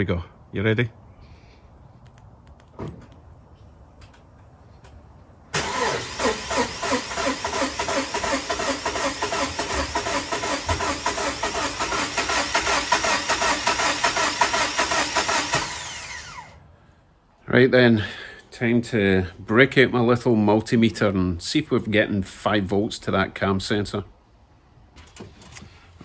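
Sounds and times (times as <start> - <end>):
starter cranking engine: 5.6 - 16.5.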